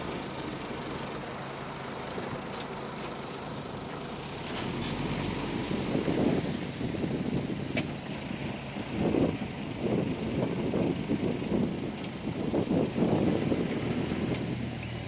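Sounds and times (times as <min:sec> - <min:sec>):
bulldozer diesel engine running: 0:00.0 - 0:15.0.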